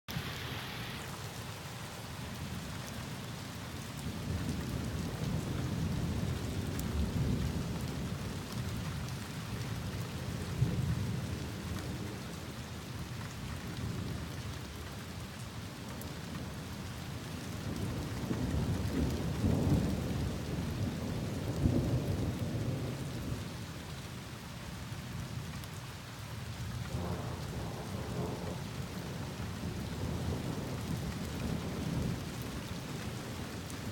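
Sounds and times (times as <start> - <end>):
heavy rain falling: 0.1 - 33.9
thunder rumbling: 17.6 - 23.4, 26.9 - 33.7.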